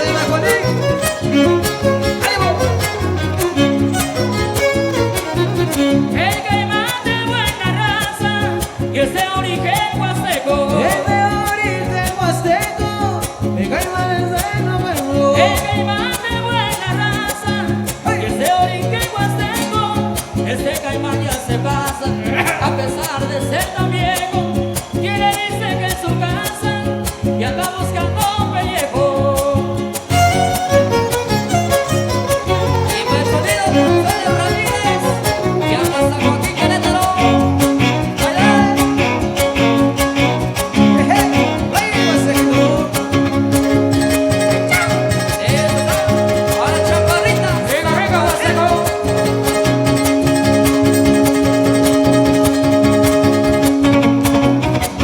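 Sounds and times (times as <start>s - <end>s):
violin melody: 0.0s - 7.7s, 30.1s - 55.0s
strummed string rhythm: 0.0s - 55.0s.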